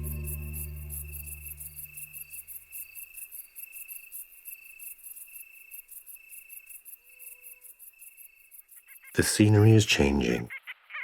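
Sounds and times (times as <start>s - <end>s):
background music: 0.0s - 2.0s
crickets chirping: 0.0s - 10.0s.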